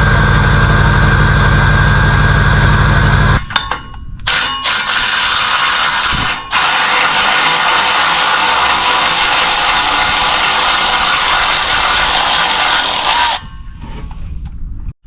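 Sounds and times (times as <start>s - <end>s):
low rumble: 0.0s - 4.3s, 13.4s - 15.0s
power tool running: 4.3s - 13.5s.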